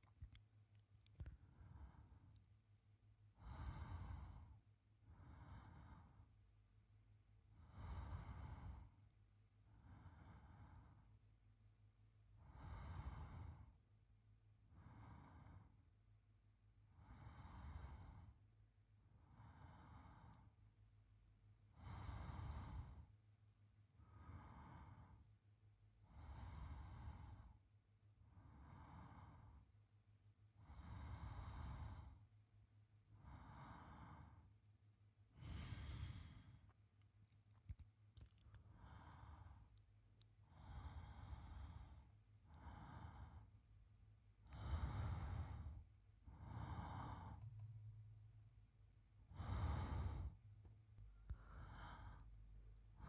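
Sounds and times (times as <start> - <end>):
man breathing in sleep: 1.2 - 2.4, 3.4 - 6.4, 7.5 - 9.0, 9.6 - 11.2, 12.4 - 13.8, 14.7 - 15.9, 16.8 - 20.6, 21.7 - 23.2, 24.0 - 25.4, 26.0 - 27.6, 28.2 - 29.8, 30.6 - 32.3, 33.1 - 34.6, 35.3 - 36.8, 38.3 - 39.8, 40.4 - 43.7, 44.4 - 47.7, 49.2 - 53.0.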